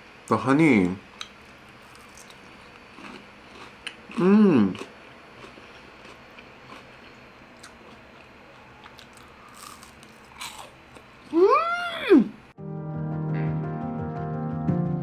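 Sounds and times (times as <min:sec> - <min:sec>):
chewing and crunching fried chicken: 0:00.8 - 0:11.6.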